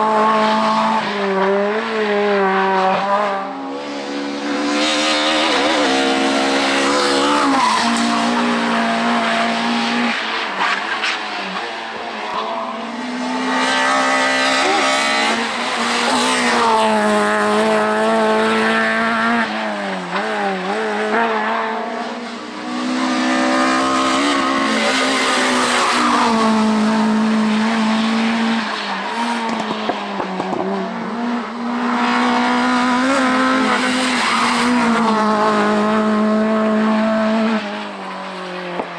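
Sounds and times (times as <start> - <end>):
racing car engines revving: 0.0 - 38.9.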